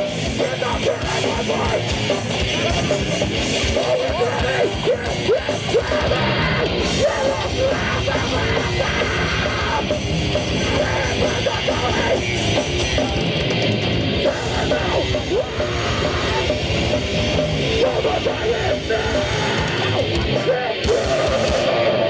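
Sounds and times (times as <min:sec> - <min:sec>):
distorted guitars: 0:00.0 - 0:22.0
fast dense drumming: 0:00.0 - 0:22.0
shouted vocal: 0:03.9 - 0:09.9, 0:17.8 - 0:22.0.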